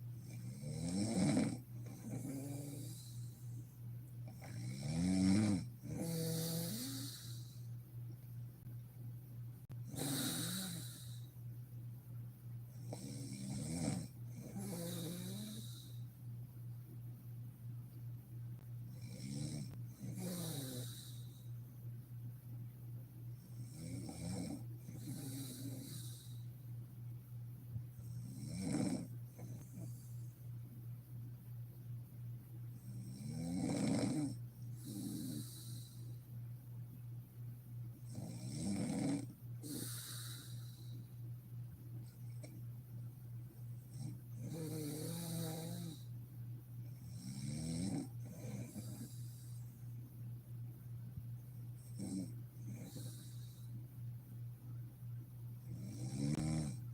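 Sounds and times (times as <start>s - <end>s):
steady low hum: 0.0s - 56.9s
woman snoring: 0.2s - 3.4s, 4.3s - 7.7s, 9.9s - 11.3s, 12.8s - 16.0s, 19.0s - 21.3s, 23.6s - 26.4s, 28.2s - 29.9s, 32.9s - 36.1s, 38.1s - 40.8s, 43.9s - 46.1s, 47.0s - 49.4s, 51.9s - 53.7s, 55.7s - 56.8s.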